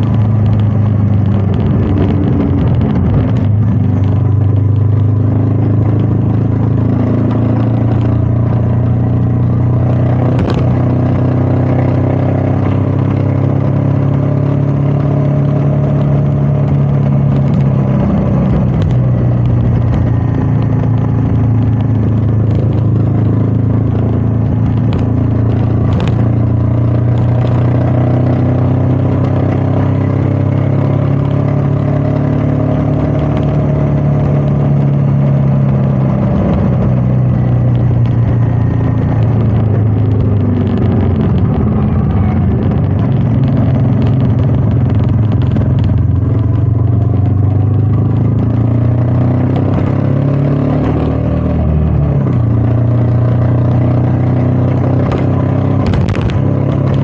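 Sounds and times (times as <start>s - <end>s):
wind on microphone: 0.0s - 6.6s, 33.0s - 51.0s, 54.4s - 57.0s
motorcycle engine running: 0.0s - 57.0s.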